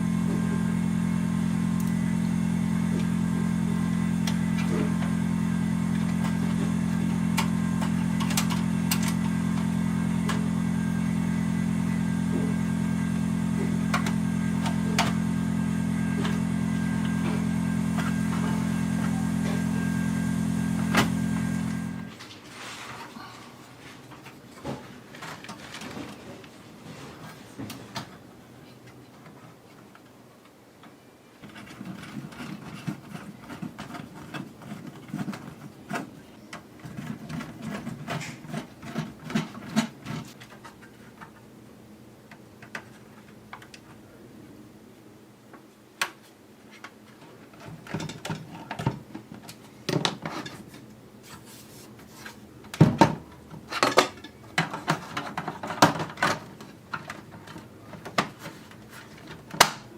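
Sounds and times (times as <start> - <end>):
plastic parts clicking and knocking: 42.3 - 44.0, 46.8 - 50.7, 52.6 - 59.9.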